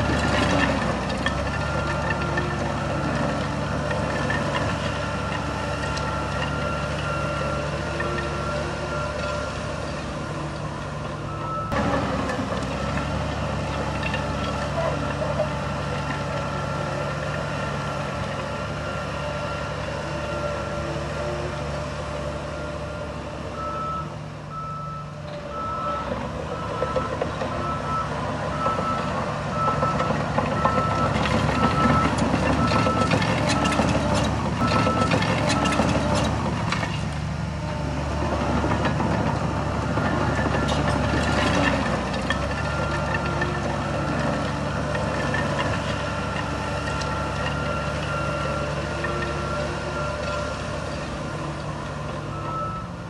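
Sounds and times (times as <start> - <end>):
diesel engine running: 0.0 - 53.0
reversing alarm beeping: 1.5 - 10.5, 11.2 - 11.8, 22.5 - 36.2, 42.4 - 50.5, 51.3 - 53.0.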